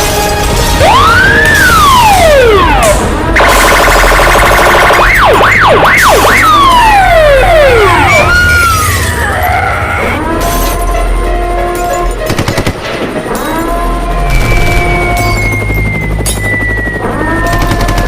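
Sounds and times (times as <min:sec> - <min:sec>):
siren rising and falling: 0:00.8 - 0:10.4
siren tones sliding down: 0:00.8 - 0:10.4.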